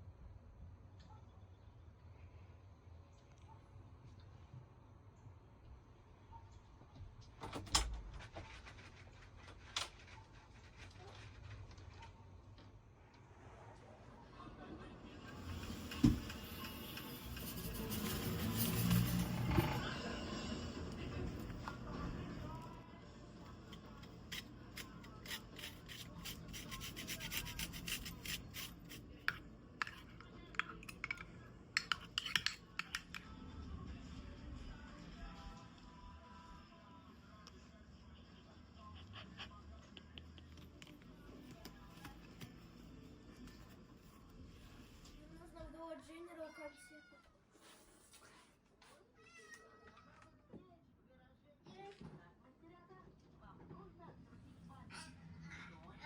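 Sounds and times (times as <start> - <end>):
rubbing and scraping: 15.4 - 19.8, 23.5 - 31.2.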